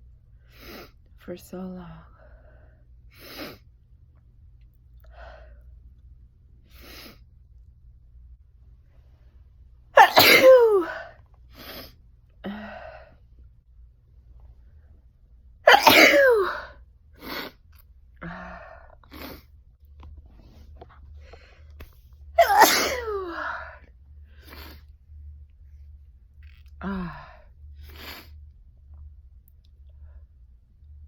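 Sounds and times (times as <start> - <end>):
quiet breaths: 2.0 - 3.8, 5.0 - 6.0, 20.2 - 22.2
person sneezing: 10.0 - 11.0, 15.7 - 16.7, 22.4 - 23.4.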